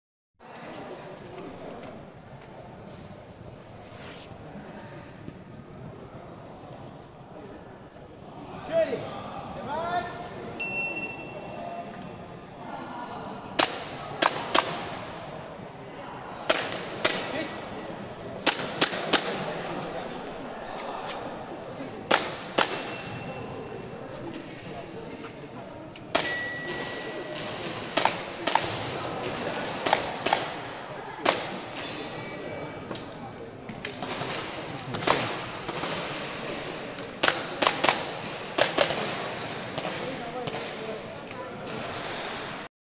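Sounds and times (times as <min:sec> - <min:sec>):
shot timer beep: 0:10.6 - 0:11.4.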